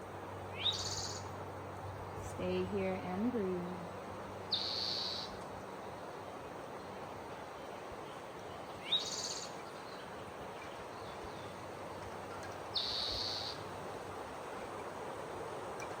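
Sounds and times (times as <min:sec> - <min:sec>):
outdoor hush: 0:00.0 - 0:16.0
high bird calls: 0:00.5 - 0:01.3, 0:04.5 - 0:05.4, 0:08.6 - 0:11.6, 0:12.7 - 0:13.6.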